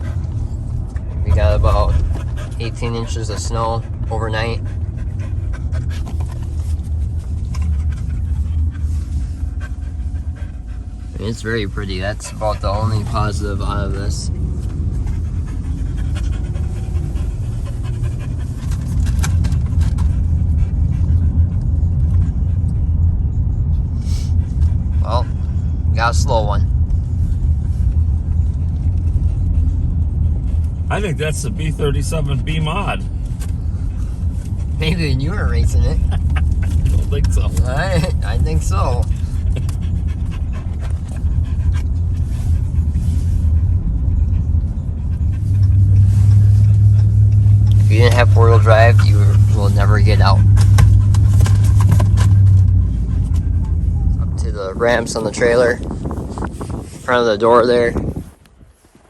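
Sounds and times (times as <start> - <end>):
truck engine rumbling: 0.0 - 58.8
truck driving through snow: 41.3 - 58.9.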